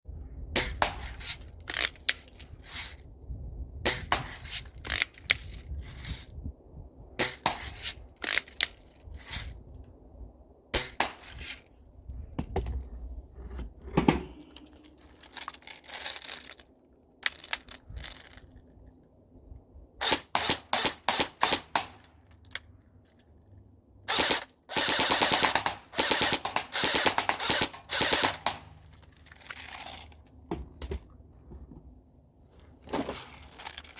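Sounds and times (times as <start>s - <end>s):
airsoft guns firing: 24.1s - 28.7s.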